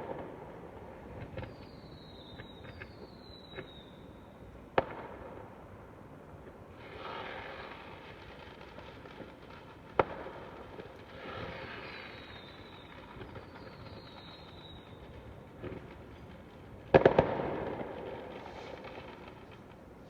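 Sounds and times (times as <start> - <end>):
firework crackling: 6.8 - 19.8
faint falling whistle: 12.1 - 15.1
firework bangs: 16.9 - 19.6.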